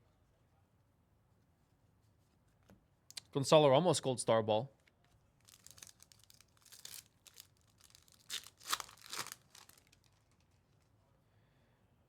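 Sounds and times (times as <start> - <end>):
cards and foil wrapper rustling: 5.4 - 10.8.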